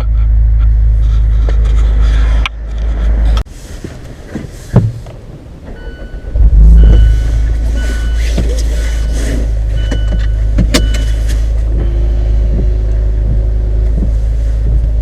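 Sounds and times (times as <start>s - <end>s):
car exhaust idling: 4.2s - 15.0s
steady high tone: 5.8s - 9.1s
wind rumble on microphone: 6.2s - 9.2s, 11.6s - 15.0s.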